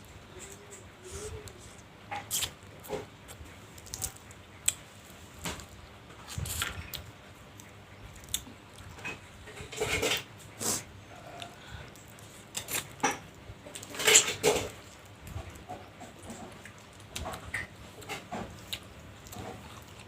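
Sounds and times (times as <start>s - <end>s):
wet chewing and slurping: 2.1s - 4.2s, 9.7s - 20.0s.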